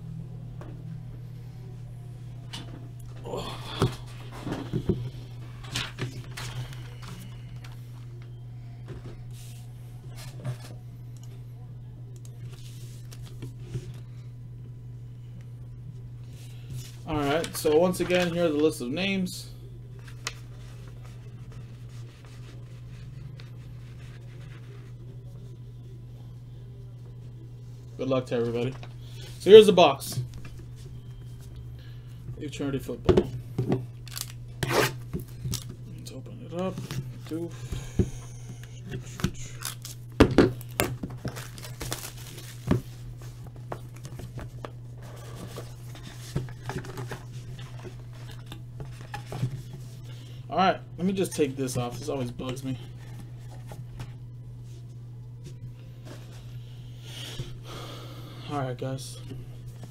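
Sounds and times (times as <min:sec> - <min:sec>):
low room hum: 0:00.0 - 0:59.9
plastic wrap tearing: 0:34.0 - 0:35.7, 0:39.4 - 0:42.7
cardboard rustling: 0:41.0 - 0:49.9.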